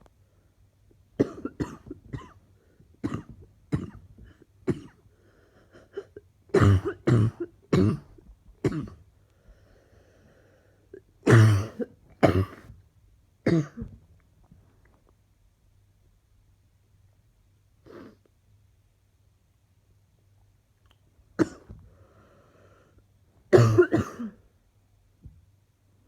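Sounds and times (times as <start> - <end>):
woman coughing: 1.2 - 2.4, 3.0 - 4.1, 4.7 - 5.0, 5.8 - 9.0, 11.3 - 12.7, 13.5 - 13.9, 21.4 - 21.8, 23.6 - 24.4.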